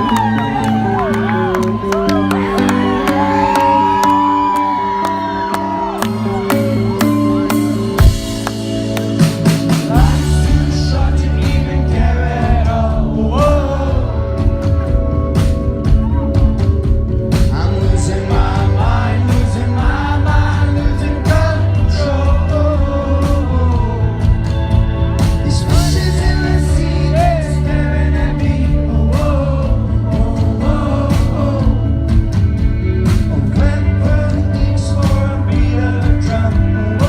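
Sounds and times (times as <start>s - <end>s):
rock band playing live: 0.0s - 37.0s
lead singer singing: 9.6s - 37.0s.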